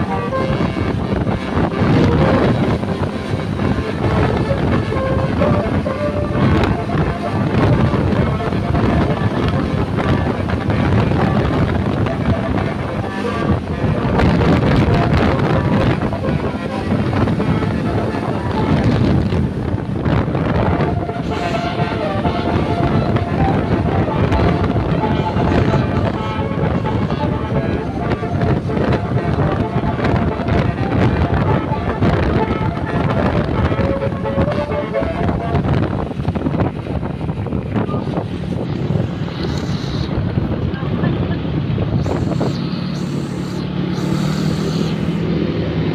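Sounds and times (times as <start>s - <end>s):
road traffic passing: 0.0s - 45.9s
wind buffeting microphone: 0.0s - 45.9s
faint short tones: 42.0s - 45.3s.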